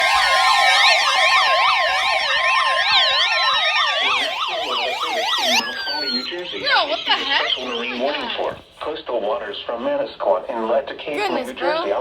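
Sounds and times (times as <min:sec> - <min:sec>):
tone falling in pitch: 0:00.0 - 0:08.0
steady high tone: 0:00.0 - 0:08.4
electronic yelp siren: 0:00.0 - 0:08.5.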